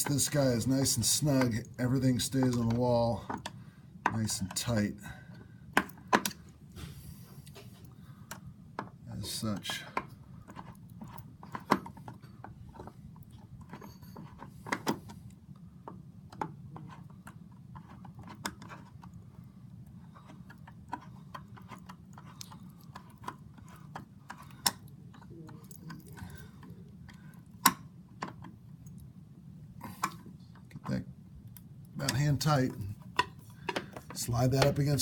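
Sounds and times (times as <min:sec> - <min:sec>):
metal trim parts clicking and knocking: 0:00.0 - 0:04.8, 0:08.3 - 0:19.2, 0:29.9 - 0:35.0
steady low hum: 0:00.0 - 0:35.0.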